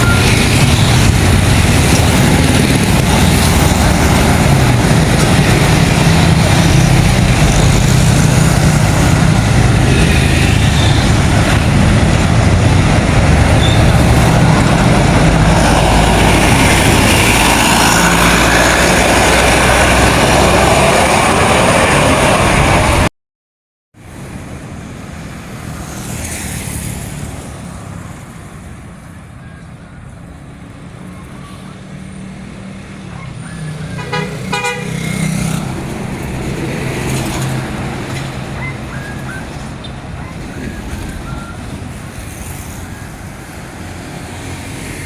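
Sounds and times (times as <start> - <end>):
bus engine rumbling: 0.0 - 23.1, 27.3 - 45.0
road noise: 0.0 - 23.1, 24.0 - 45.0.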